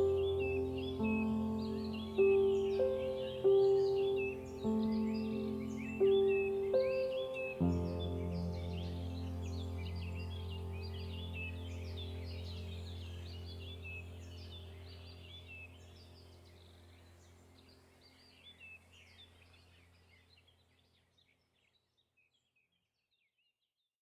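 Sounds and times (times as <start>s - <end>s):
low steady drone: 0.0s - 19.0s
birds chirping: 0.0s - 21.7s.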